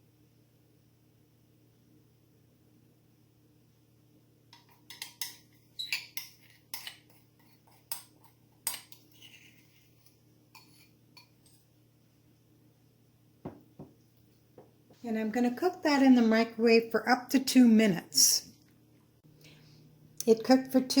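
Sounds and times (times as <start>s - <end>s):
spoon clinking and scraping dish: 4.6s - 11.6s.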